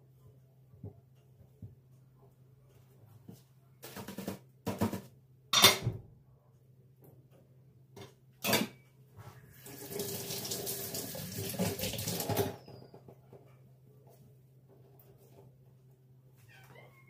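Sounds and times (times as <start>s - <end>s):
kitchen tap running into sink: 9.6s - 12.6s.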